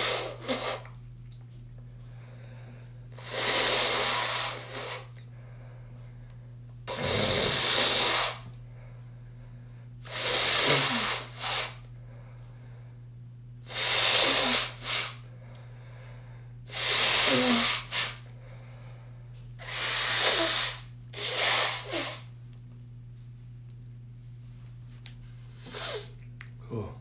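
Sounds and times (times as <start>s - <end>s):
person blowing nose: 0.0s - 1.0s, 3.2s - 5.2s, 6.9s - 8.5s, 10.0s - 11.9s, 13.6s - 15.3s, 16.7s - 18.3s, 19.6s - 22.3s, 25.6s - 26.1s.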